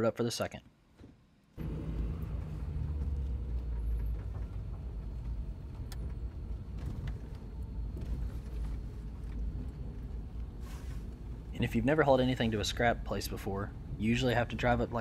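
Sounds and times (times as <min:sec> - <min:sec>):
vehicle engine and road rumble: 0:01.6 - 0:15.0.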